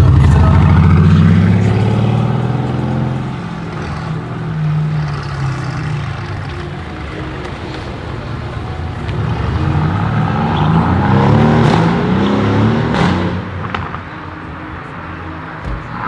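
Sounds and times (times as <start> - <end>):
car engine accelerating hard: 0.0 - 16.0
sharp exhaust cracks: 0.0 - 16.0.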